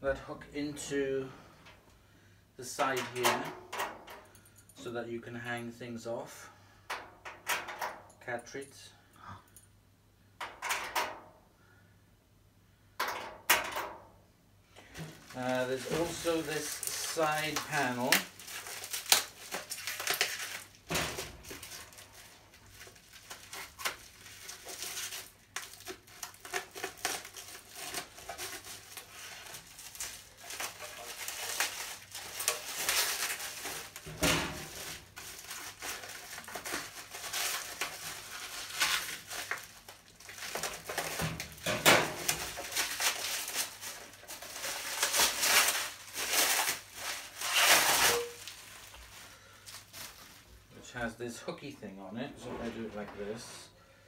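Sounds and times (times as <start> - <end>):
packaging crinkling and rustling: 14.8 - 50.7.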